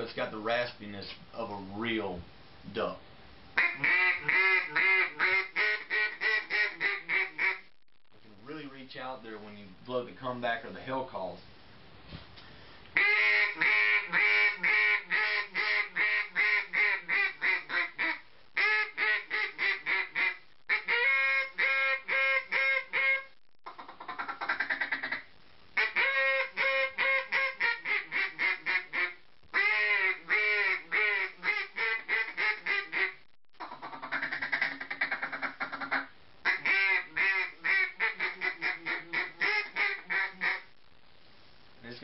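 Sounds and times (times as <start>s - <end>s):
duck call quacks: 3.6s - 7.7s, 13.0s - 40.7s.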